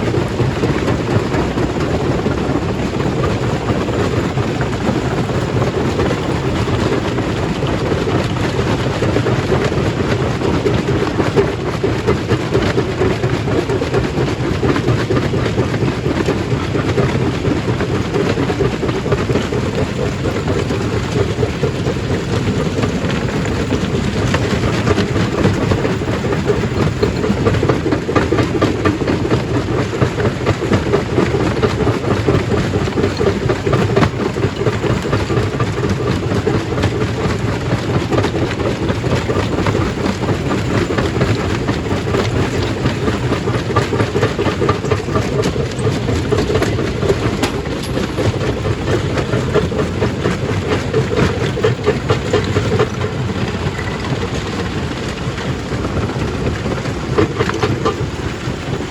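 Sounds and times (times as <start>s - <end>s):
rocks knocking and rattling: 0.1s - 58.9s
stone crusher rumbling: 35.8s - 58.9s.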